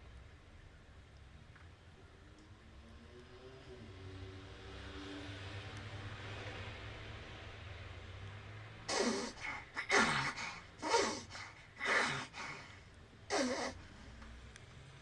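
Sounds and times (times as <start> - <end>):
snoring: 8.9 - 12.7, 13.3 - 13.8.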